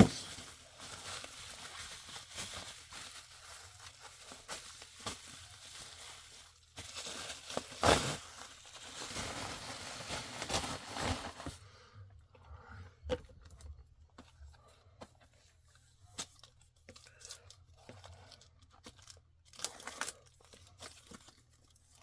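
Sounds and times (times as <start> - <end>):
plastic packaging crinkling: 0.0 - 11.5, 16.4 - 22.0.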